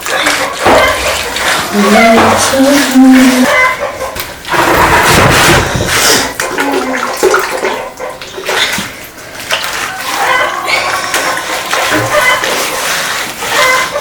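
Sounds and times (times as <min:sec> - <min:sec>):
water rushing and splashing: 0:06.1 - 0:13.9.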